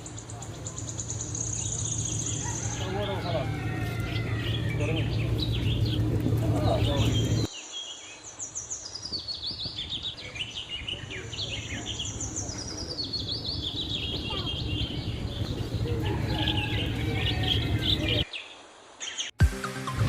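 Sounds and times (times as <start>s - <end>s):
steady low rumble: 0.0s - 7.5s, 9.5s - 18.2s
caged birds chirping: 0.0s - 19.3s.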